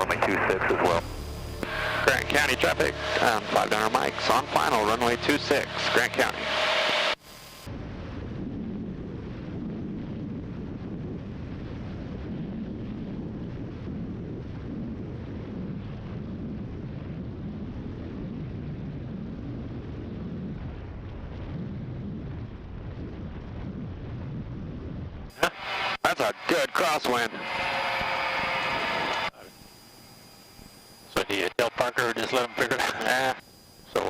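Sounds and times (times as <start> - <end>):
airplane engine cabin rumble: 0.0 - 17.1.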